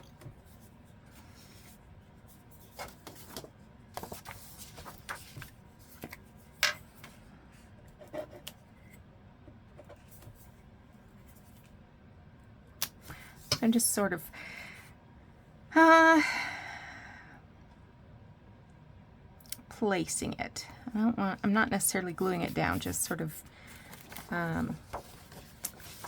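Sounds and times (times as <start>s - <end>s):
paper rustling: 0.0s - 7.2s, 22.2s - 26.0s.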